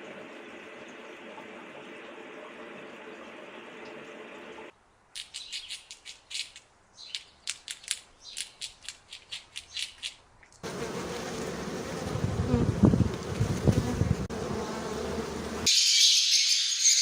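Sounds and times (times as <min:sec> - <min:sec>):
bird chirping and squawking: 0:05.3 - 0:07.5.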